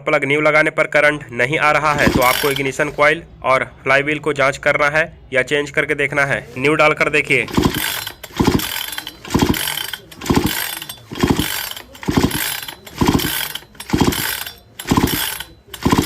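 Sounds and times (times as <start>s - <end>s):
chainsaw starter rope pulls: 1.9s - 3.0s, 7.4s - 16.0s.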